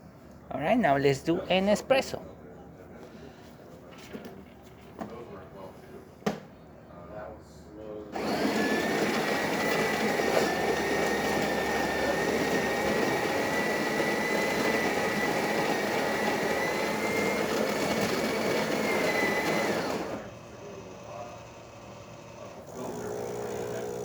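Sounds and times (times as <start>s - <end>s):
coffee grinder whirring: 8.2s - 24.0s.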